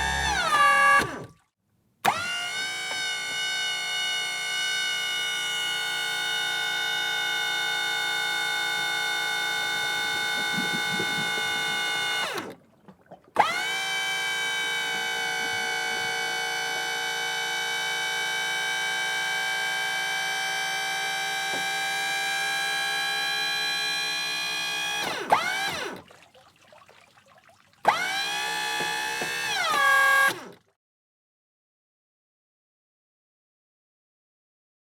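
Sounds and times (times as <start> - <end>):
electric pump motor whining: 0.0 - 1.4, 2.0 - 12.7, 13.3 - 26.1, 27.8 - 30.6
motor click: 0.0 - 1.4, 2.0 - 3.2, 10.2 - 12.6, 24.9 - 26.0, 27.9 - 30.6.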